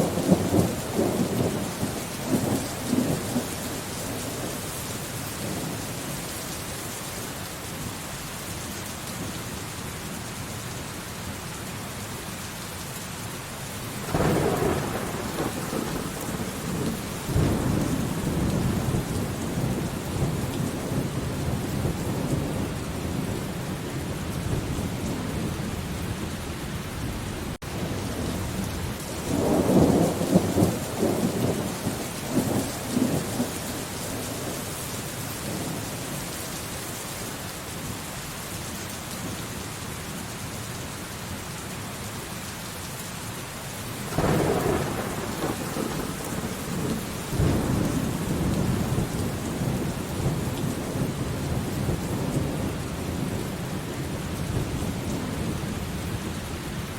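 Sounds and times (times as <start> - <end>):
heavy rain: 0.0 - 56.9
thunder rolling: 14.0 - 26.2, 44.1 - 56.4.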